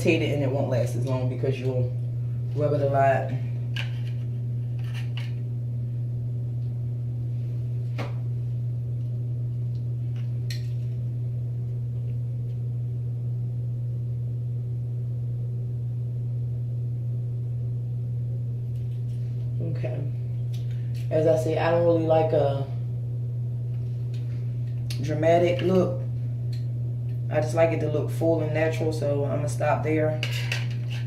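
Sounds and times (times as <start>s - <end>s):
low hum: 0.0s - 31.0s.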